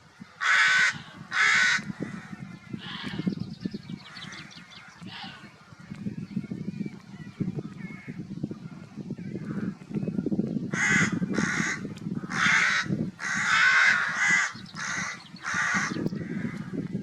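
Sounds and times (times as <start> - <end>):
crow cawing: 0.4 - 2.2, 10.8 - 16.7.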